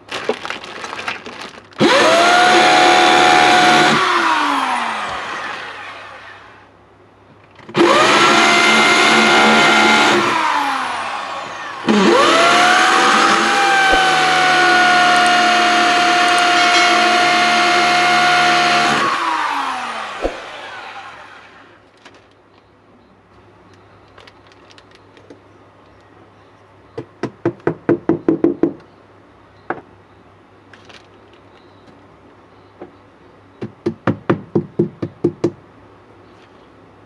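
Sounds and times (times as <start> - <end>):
power tool motor whining: 1.8 - 6.7, 7.7 - 21.8.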